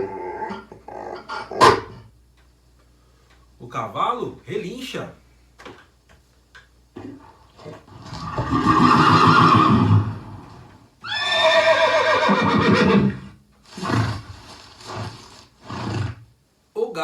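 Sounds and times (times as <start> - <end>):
horse neighing: 7.9 - 16.2.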